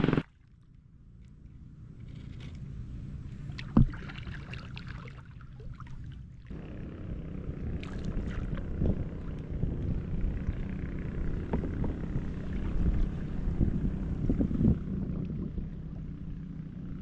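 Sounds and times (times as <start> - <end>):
wind rumble on microphone: 1.8 - 17.0
water sloshing around kayak hull: 3.3 - 6.5, 7.8 - 9.0.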